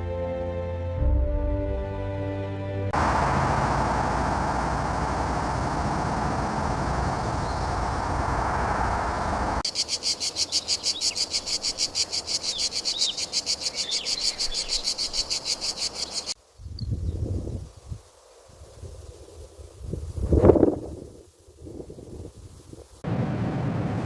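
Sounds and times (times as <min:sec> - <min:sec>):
dense steady noise: 0:03.0 - 0:16.7
high-pitched pulsing chirp: 0:07.0 - 0:08.1, 0:10.1 - 0:17.2.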